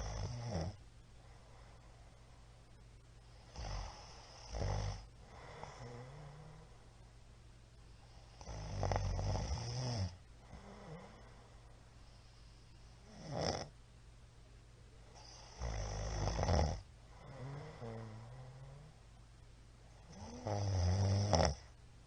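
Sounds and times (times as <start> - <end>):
man snoring loudly: 0.0 - 0.8, 3.5 - 6.6, 8.4 - 11.2, 13.0 - 13.7, 15.2 - 18.9, 20.1 - 21.7.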